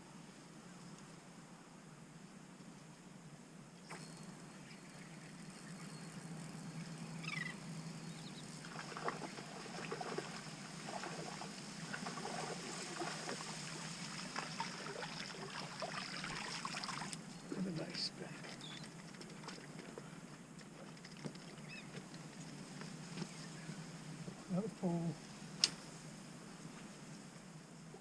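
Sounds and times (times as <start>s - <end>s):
small waves lapping: 4.6s - 27.2s.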